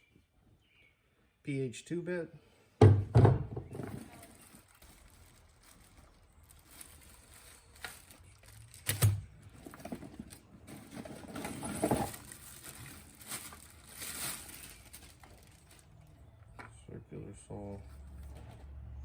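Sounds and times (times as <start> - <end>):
packaging rustling: 3.8 - 16.2.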